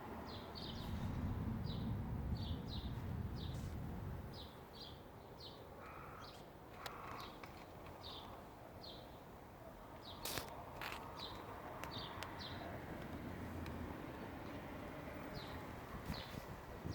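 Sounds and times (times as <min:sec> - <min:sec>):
steady low rumble: 0:00.6 - 0:04.5.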